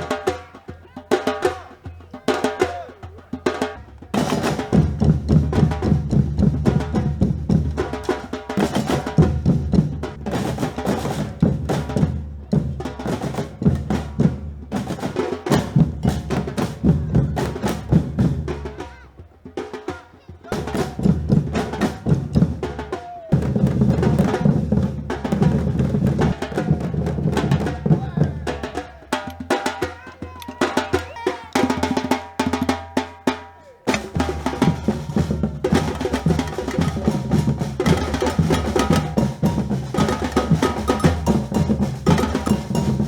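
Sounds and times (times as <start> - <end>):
percussion ensemble drum groove: 0.0 - 43.0.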